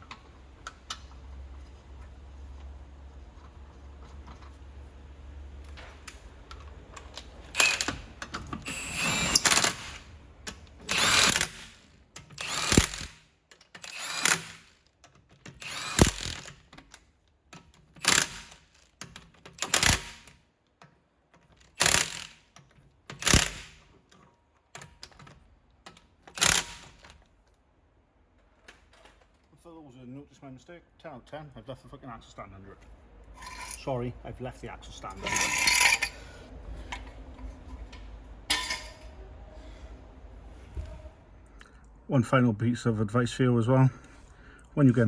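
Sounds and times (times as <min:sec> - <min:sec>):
tool working in short bursts: 0:07.5 - 0:08.0, 0:08.6 - 0:10.0, 0:10.8 - 0:13.2, 0:13.8 - 0:14.7, 0:15.6 - 0:16.5, 0:18.0 - 0:18.6, 0:19.6 - 0:20.3, 0:21.8 - 0:22.4, 0:23.2 - 0:23.8, 0:26.3 - 0:27.0, 0:35.2 - 0:36.2.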